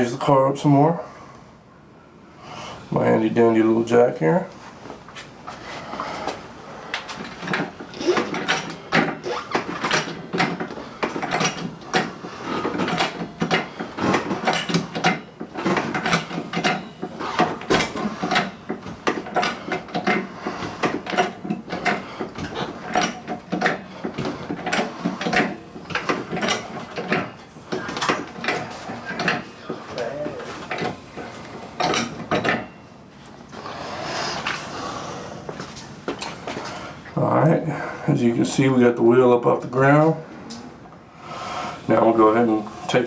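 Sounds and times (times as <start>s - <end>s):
hydraulic jack pumping: 5.5s - 32.8s.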